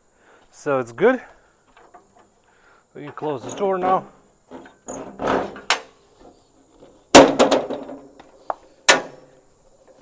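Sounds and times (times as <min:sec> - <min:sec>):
metal door slamming: 0:04.9 - 0:05.9, 0:07.1 - 0:08.0.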